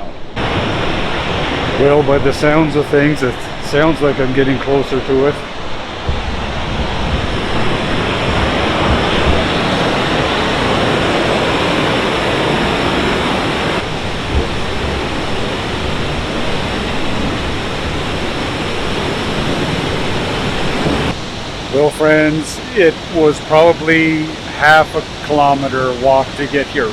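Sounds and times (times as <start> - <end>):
waterfall rushing: 0.0 - 26.9.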